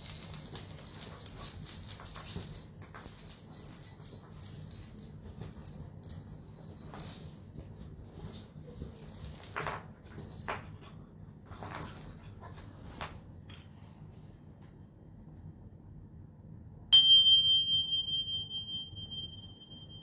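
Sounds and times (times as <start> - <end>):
single bell ringing: 0.0 - 1.6, 17.0 - 20.0
small bells jingling: 0.0 - 13.3.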